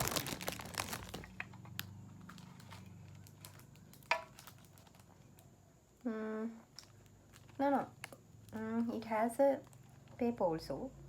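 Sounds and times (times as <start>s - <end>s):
gift box and paper rustling: 0.0s - 5.1s.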